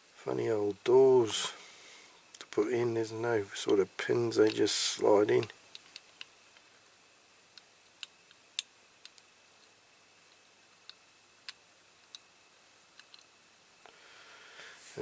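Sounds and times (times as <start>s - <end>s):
small clicks of model parts: 7.6s - 12.3s, 13.0s - 13.3s.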